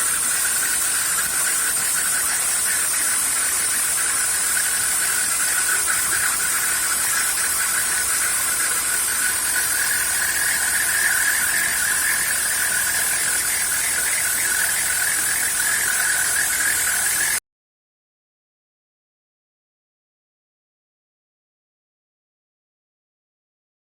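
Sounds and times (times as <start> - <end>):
rough fluttering cutting noise: 0.0 - 17.4
router spindle whine: 0.0 - 17.4.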